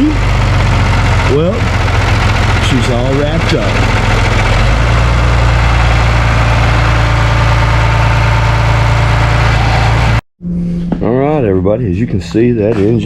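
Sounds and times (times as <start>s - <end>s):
tractor diesel engine idling: 0.0s - 10.2s.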